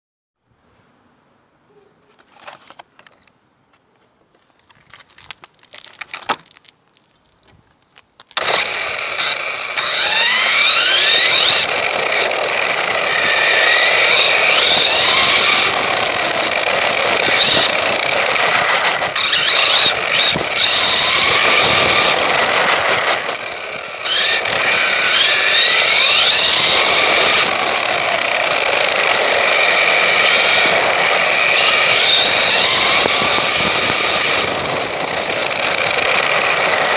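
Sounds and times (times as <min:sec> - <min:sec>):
small vehicle motor revving: 0:08.4 - 0:36.9.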